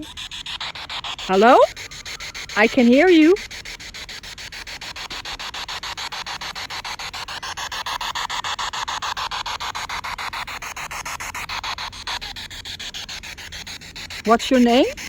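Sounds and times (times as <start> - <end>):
pulsing radio static: 0.0 - 0.2, 1.1 - 1.7, 2.5 - 3.4, 14.3 - 15.0.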